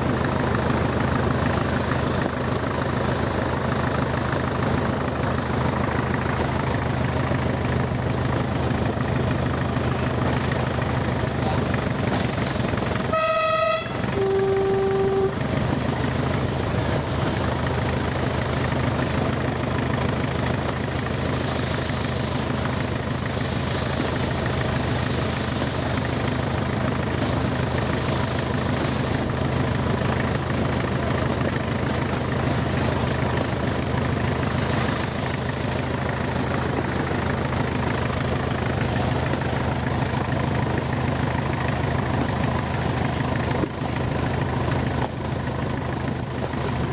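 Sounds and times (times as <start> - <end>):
diesel locomotive engine drone: 0.0 - 46.9
low horn note: 13.0 - 15.6.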